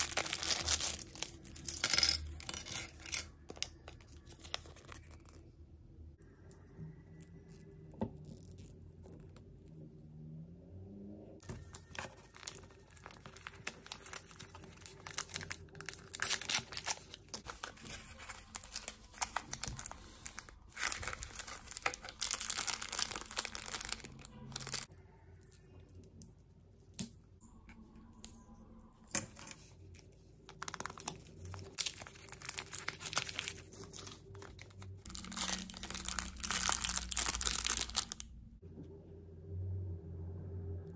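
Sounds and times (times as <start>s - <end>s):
plastic wrappers tearing and crinkling: 0.0s - 1.6s, 11.4s - 24.9s, 30.5s - 38.3s.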